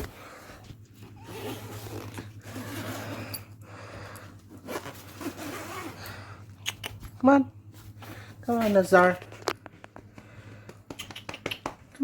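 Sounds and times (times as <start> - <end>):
low electrical hum: 0.0 - 12.0
zipper rasping open: 1.0 - 3.5, 4.5 - 6.2.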